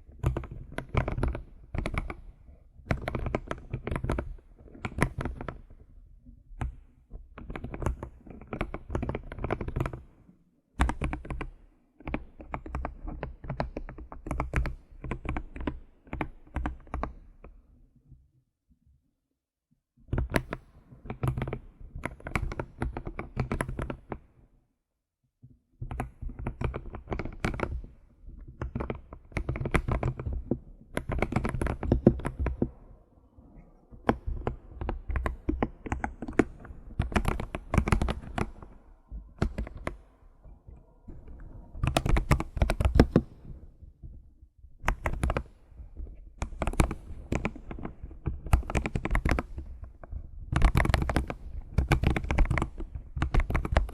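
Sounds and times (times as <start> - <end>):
keyboard typing: 28.6 - 32.8, 33.6 - 43.7, 44.9 - 45.6, 50.6 - 53.9.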